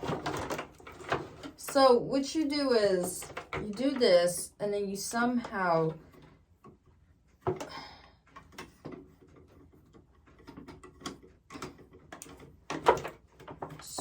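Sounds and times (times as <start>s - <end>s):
clicks and knocks of parts handled: 0.0s - 1.6s, 6.1s - 14.0s.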